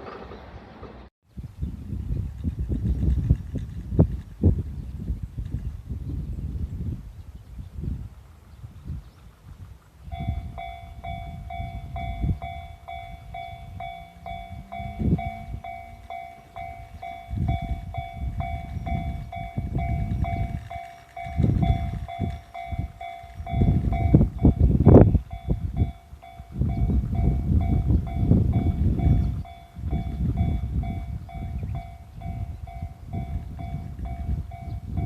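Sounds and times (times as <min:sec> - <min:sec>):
level crossing warning bell: 0:10.1 - 0:35.0.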